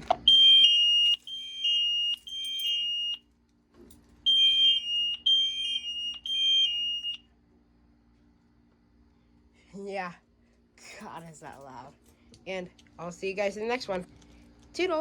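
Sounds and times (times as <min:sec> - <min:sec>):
fire alarm horn blasts: 0:00.1 - 0:03.3, 0:04.3 - 0:07.2.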